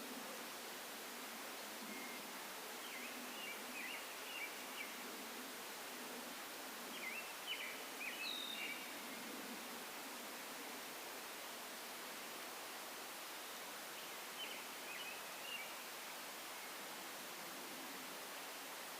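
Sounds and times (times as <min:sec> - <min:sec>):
steady background hiss: 0:00.0 - 0:18.9
songbird chirping: 0:01.8 - 0:05.0, 0:06.9 - 0:09.3, 0:13.8 - 0:17.0.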